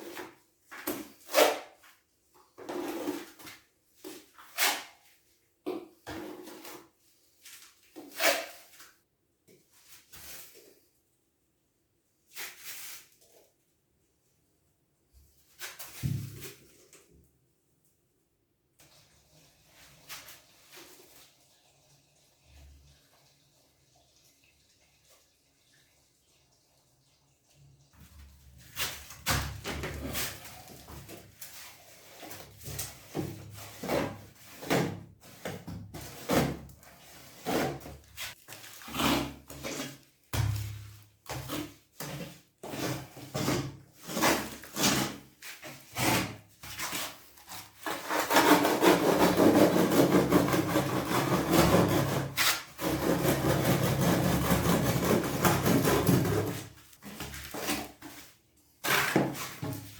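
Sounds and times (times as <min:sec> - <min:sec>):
scraping on a hard surface: 0:29.7 - 0:40.0, 0:41.3 - 0:59.9.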